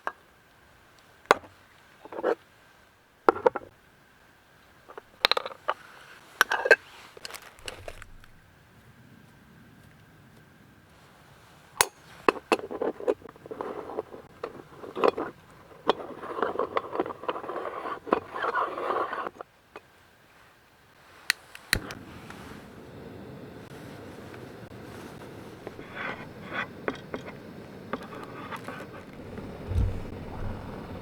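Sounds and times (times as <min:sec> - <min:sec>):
scraping and rustling: 0:04.9 - 0:08.5, 0:23.6 - 0:31.0
camp gear knocking and clinking: 0:06.4 - 0:08.4, 0:29.1 - 0:31.0.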